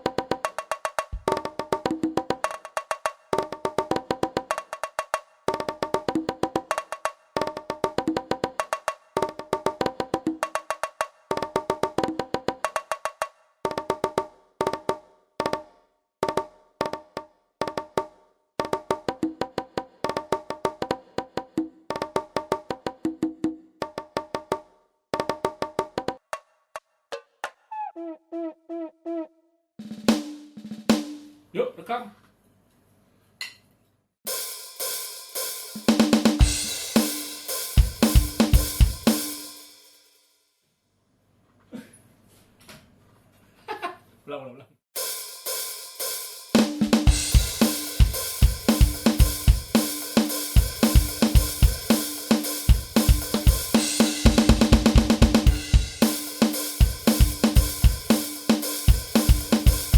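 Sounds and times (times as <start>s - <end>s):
kick drum thumps: 1.1s - 1.4s, 54.3s - 56.0s
snare drum hits: 35.8s - 39.5s, 46.6s - 59.9s.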